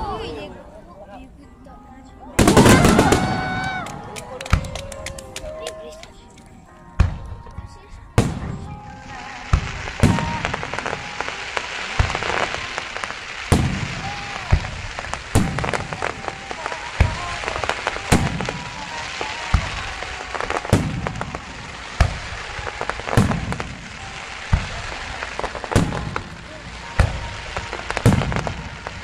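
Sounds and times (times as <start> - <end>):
firework shells booming: 2.4 - 5.1, 8.2 - 29.0
firework stars crackling: 2.4 - 29.0.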